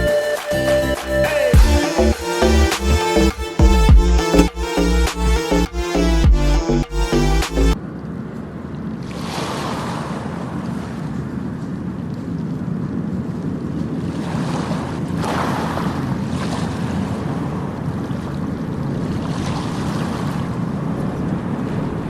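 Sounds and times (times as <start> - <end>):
wind buffeting microphone: 10.1 - 22.0.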